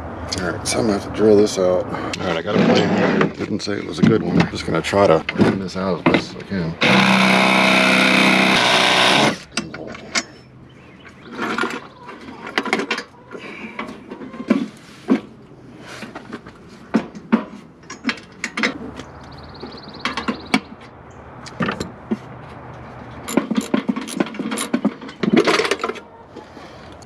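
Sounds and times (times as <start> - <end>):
hand tools clanking on metal: 5.2 - 14.4, 23.2 - 26.1.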